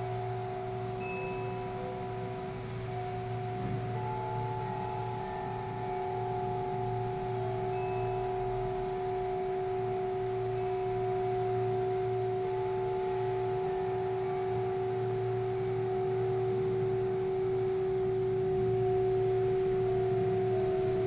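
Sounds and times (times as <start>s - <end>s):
low wavering hum: 0.0s - 21.0s
chimes ringing: 0.2s - 11.0s.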